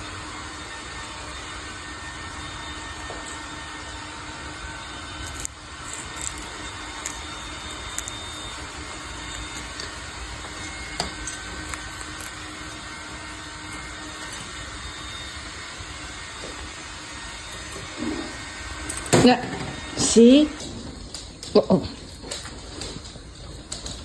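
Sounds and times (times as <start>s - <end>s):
fan hum: 0.0s - 24.0s
bird biting into corn: 5.2s - 10.0s, 11.1s - 12.5s.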